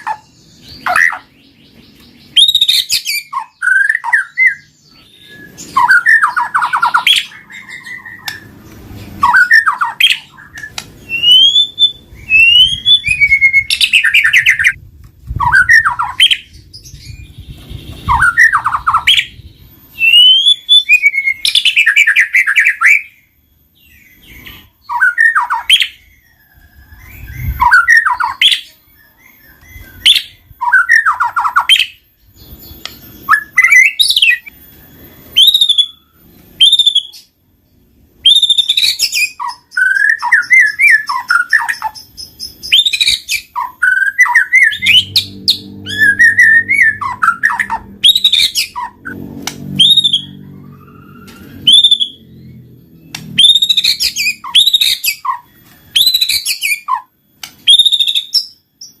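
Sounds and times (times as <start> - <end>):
songbird whistles and trills: 0.0 - 59.0.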